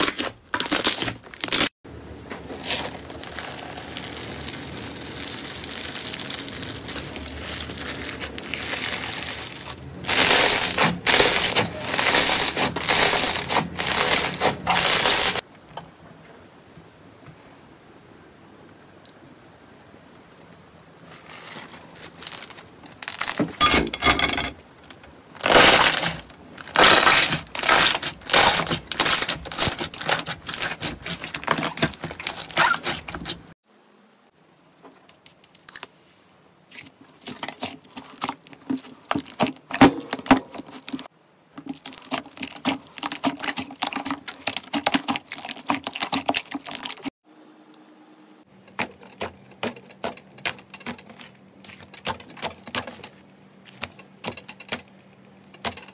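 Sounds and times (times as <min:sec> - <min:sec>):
sticky slime crackles and pops: 0:02.6 - 0:15.2, 0:26.7 - 0:33.4.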